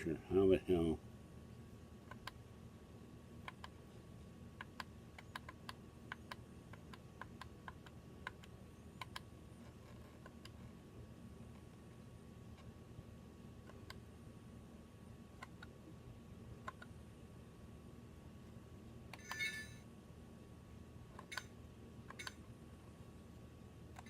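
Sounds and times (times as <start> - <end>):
faint steady hum: 0.0 - 24.0
buttons clicking on electronic device: 22.1 - 22.4.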